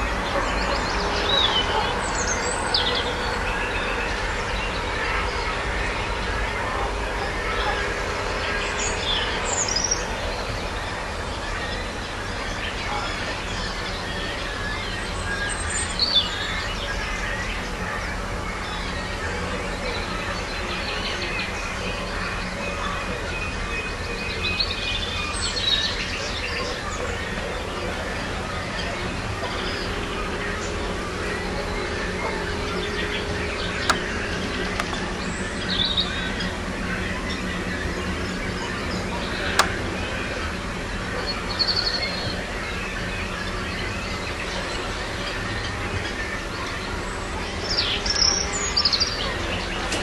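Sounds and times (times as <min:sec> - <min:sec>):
birds chirping and twittering: 0:00.0 - 0:50.0
outdoor background hum: 0:00.0 - 0:50.0
sharp clicks: 0:39.6 - 0:39.9.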